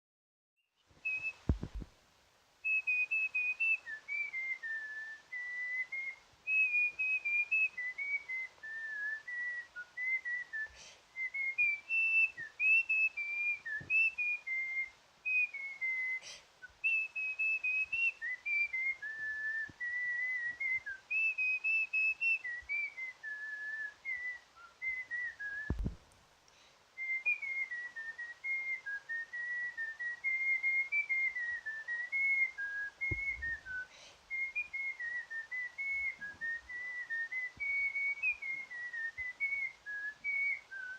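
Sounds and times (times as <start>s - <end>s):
person whistling a tune: 1.0s - 1.8s, 2.6s - 26.0s, 27.0s - 40.9s
low thumps: 1.4s - 1.9s, 25.6s - 26.0s.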